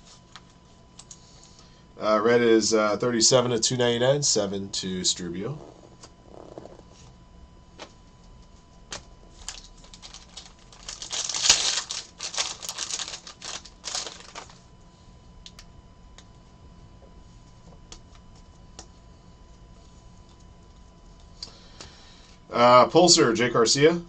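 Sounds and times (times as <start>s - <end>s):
foil wrapper crinkling: 8.9s - 14.6s.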